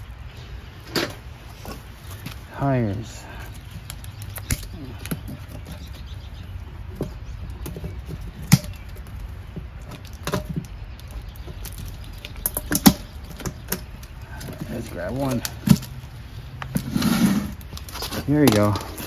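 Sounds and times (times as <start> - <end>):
knocks and clatters of handling: 3.4 - 19.0.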